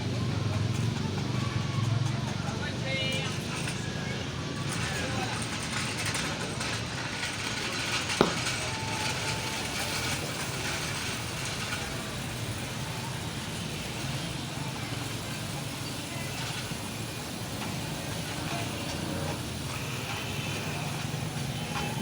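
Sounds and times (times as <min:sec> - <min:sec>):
motorcycle engine idling: 0:00.0 - 0:04.2.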